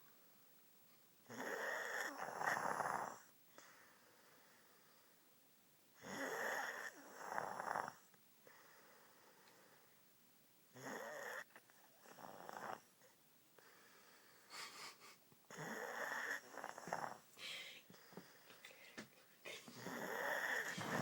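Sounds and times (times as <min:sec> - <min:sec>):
woman snoring: 0:01.3 - 0:03.2, 0:06.0 - 0:08.0, 0:15.5 - 0:17.8, 0:19.6 - 0:21.0.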